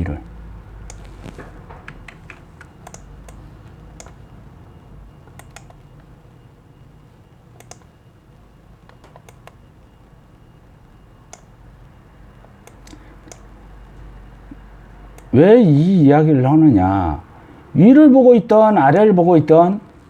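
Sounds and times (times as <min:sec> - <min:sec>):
low steady hum: 0:00.0 - 0:20.0
mouse and keyboard clicks: 0:00.9 - 0:03.4, 0:05.3 - 0:05.8, 0:07.6 - 0:07.9, 0:08.9 - 0:09.6.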